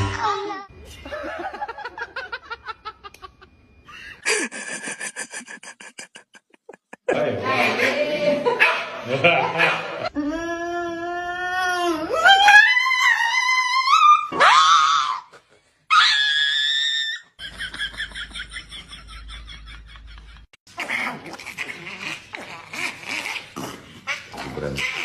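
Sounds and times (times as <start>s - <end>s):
dog howling: 10.2s - 15.3s.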